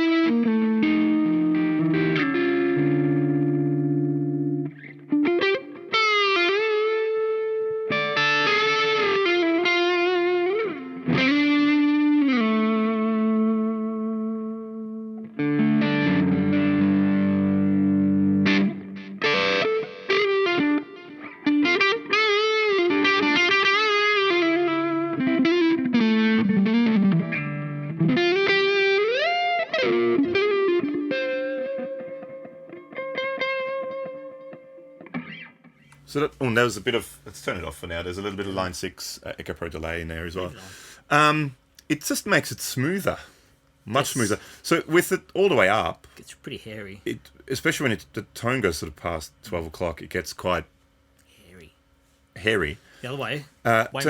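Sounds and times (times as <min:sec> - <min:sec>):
distorted electric guitar lead: 0:00.0 - 0:36.1.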